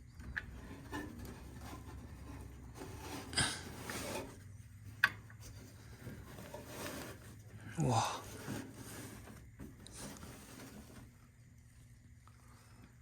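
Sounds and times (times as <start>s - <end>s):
handling scraping and rubbing: 0.2s - 11.3s.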